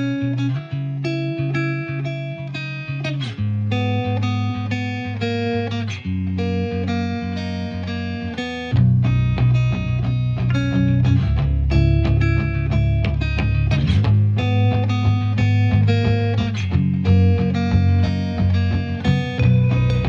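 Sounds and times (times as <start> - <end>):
plucked guitar music: 0.0 - 20.0
bass line: 8.7 - 20.0.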